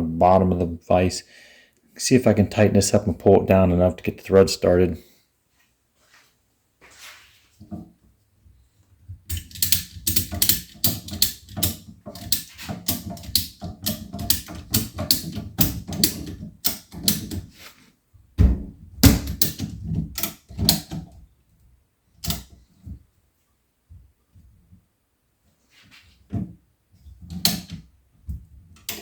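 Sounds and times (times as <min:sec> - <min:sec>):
ratchet strap pawl clicking: 0:09.3 - 0:17.4.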